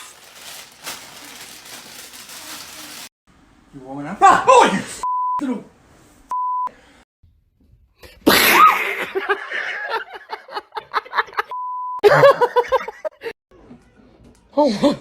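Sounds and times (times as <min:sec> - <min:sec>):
censor bleep: 0:06.3 - 0:06.7.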